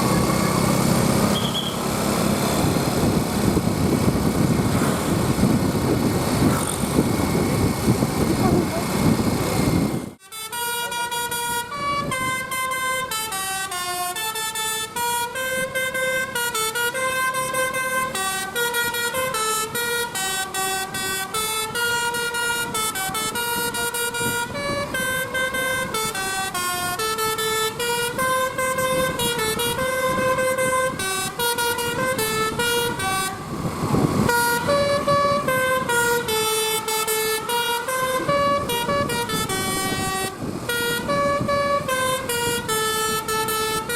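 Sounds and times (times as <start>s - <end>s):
bus horn playing melody: 10.2s - 43.9s.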